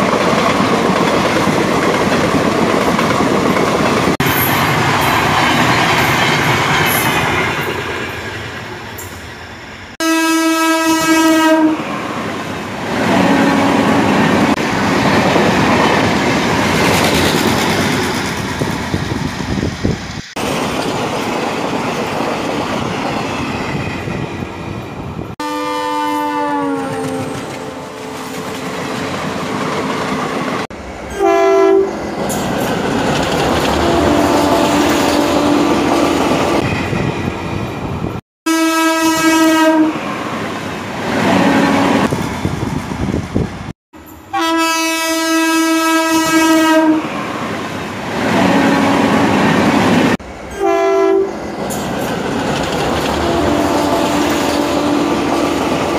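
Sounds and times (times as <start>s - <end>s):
train wheels rumbling on track: 0.0s - 10.0s, 11.0s - 25.4s, 26.3s - 38.2s, 39.5s - 43.7s, 45.7s - 55.9s
train horn blasts: 10.0s - 11.8s, 13.0s - 14.1s, 25.4s - 28.6s, 31.1s - 32.0s, 33.8s - 35.8s, 38.5s - 40.0s, 44.3s - 47.1s, 48.3s - 49.2s, 50.5s - 51.3s, 53.2s - 55.1s.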